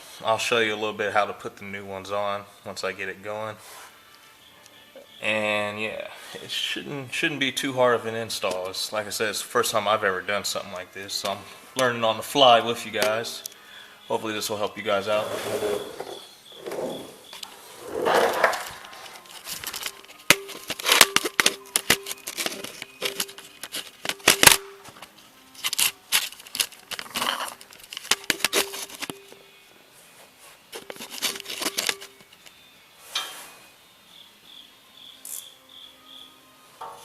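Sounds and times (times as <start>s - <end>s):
insect chirps: 4.0s - 6.9s, 13.0s - 24.8s, 30.8s - 36.7s
hands handling parts and tools: 17.4s - 29.4s, 30.7s - 32.6s.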